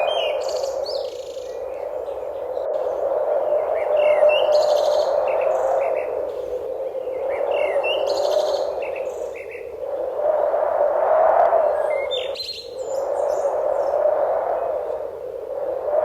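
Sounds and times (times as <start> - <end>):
birds chirping and trilling: 0.0 - 9.7, 11.6 - 14.0.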